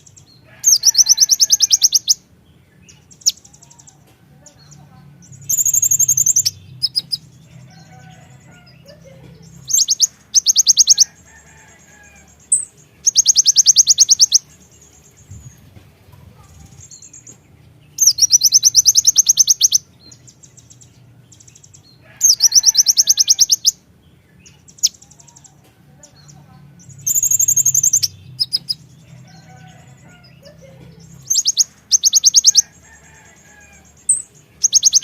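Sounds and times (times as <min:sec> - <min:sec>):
soft bird chirps: 0:00.0 - 0:35.0
bird fast high trills: 0:26.8 - 0:29.4.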